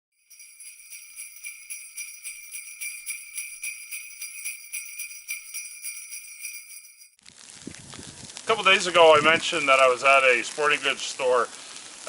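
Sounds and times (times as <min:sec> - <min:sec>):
jingle bells shaken: 0:00.2 - 0:07.2.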